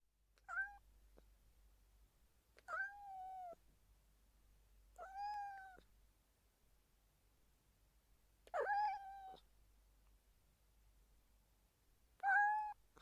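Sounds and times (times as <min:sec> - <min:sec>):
cat meowing: 0:00.4 - 0:00.8, 0:02.6 - 0:03.6, 0:05.0 - 0:05.8, 0:08.5 - 0:09.4, 0:12.2 - 0:12.8.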